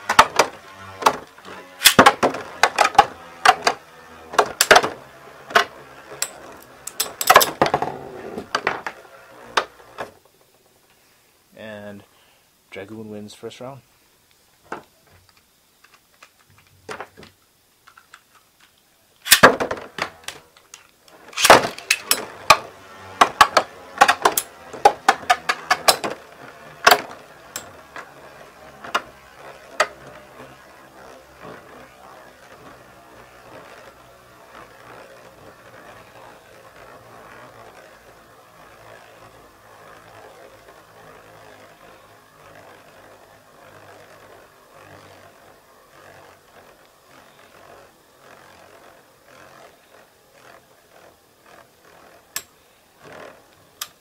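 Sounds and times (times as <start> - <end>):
spinning tops launched: 0.0 - 10.2, 19.2 - 49.4
spinning tops whirring: 0.0 - 10.8, 15.3 - 54.0
tops colliding with metallic clicks: 1.8 - 3.8.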